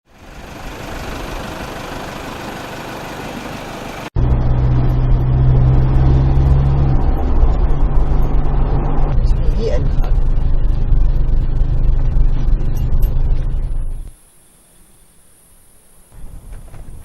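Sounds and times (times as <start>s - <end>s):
diesel engine droning: 0.1s - 14.2s
steady hiss: 14.1s - 17.0s.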